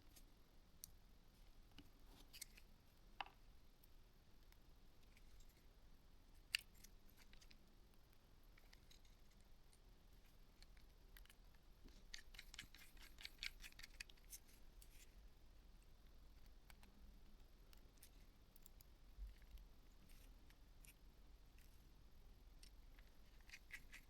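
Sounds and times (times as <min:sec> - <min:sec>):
small plastic clicks: 0:10.6 - 0:15.0.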